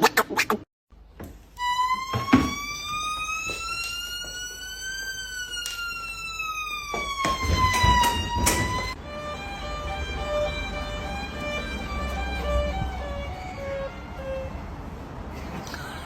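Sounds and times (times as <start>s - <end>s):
siren-like wail: 1.6s - 9.0s
sharp knocks: 6.9s - 9.0s.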